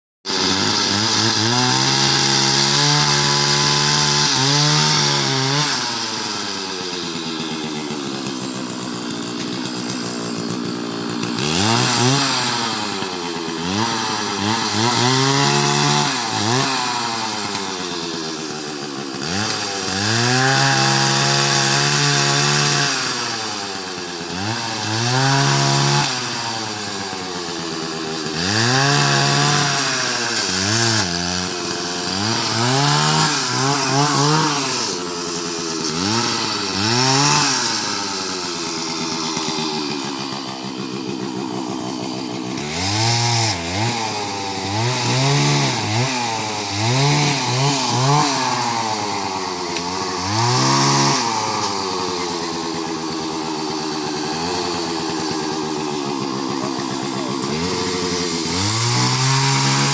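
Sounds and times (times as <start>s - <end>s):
chainsaw revving: 0.3s - 59.9s.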